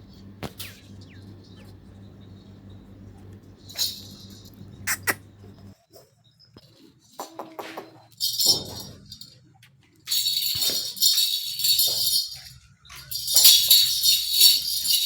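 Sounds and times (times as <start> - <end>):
small bells jingling: 3.6 - 5.2, 8.1 - 9.5, 10.1 - 15.0.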